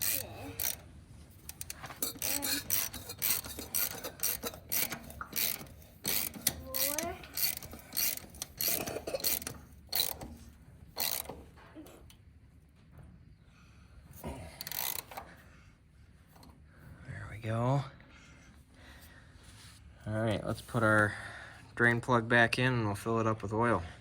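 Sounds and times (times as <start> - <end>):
ratchet wrench clicking: 0.0 - 0.8, 1.4 - 11.4, 14.6 - 15.3.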